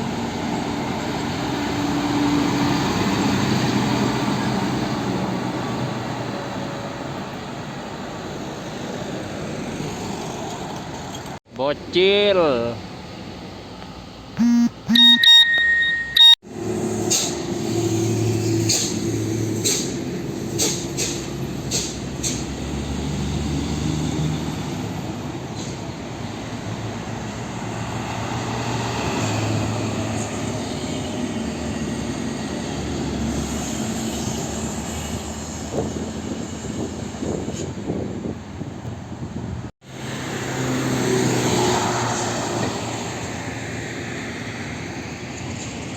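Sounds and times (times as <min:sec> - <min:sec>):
diesel trucks driving past: 0:00.0 - 0:11.4, 0:16.6 - 0:45.9
short beeps: 0:14.4 - 0:16.4.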